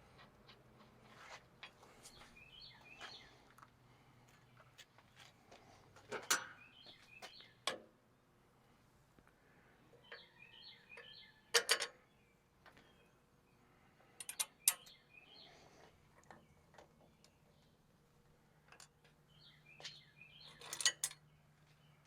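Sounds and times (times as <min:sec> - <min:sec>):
bird chirping: 0:01.9 - 0:03.5, 0:06.4 - 0:07.7, 0:09.6 - 0:17.8, 0:19.2 - 0:22.0.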